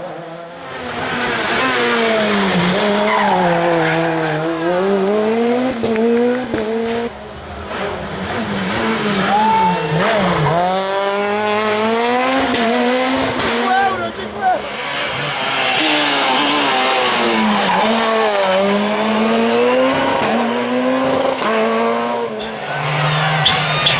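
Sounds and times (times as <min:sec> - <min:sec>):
car engine revving hard: 0:00.0 - 0:23.9.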